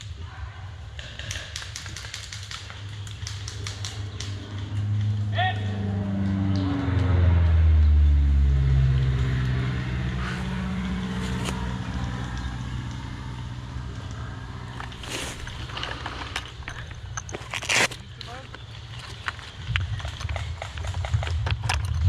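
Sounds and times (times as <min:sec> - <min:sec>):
vehicle engine humming: 0:02.9 - 0:22.0
short rustle: 0:10.2 - 0:11.7, 0:14.7 - 0:19.3.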